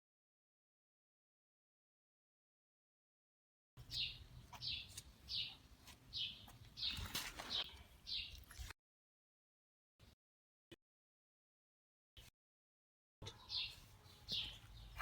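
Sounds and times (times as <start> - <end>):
bird chirping: 3.8 - 8.6, 13.2 - 15.0.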